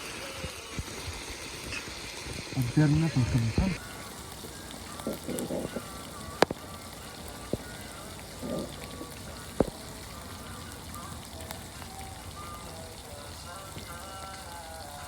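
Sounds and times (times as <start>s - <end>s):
campfire crackling and popping: 0.0s - 15.0s
faint voices: 0.0s - 15.0s.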